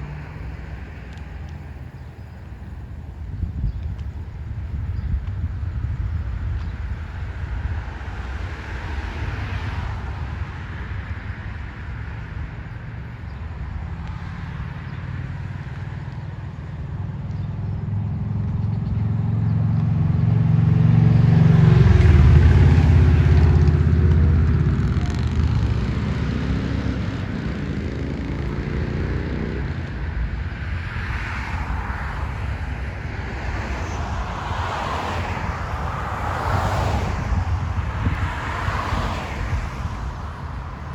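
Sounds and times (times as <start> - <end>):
low street noise: 0.0 - 40.9
vehicle engine passing: 17.8 - 40.9.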